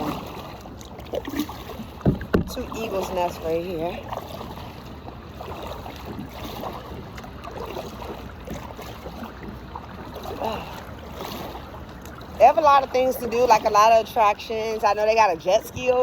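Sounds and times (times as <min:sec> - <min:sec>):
water lapping around a kayak: 0:00.0 - 0:16.0
wind rumble on microphone: 0:01.3 - 0:07.2.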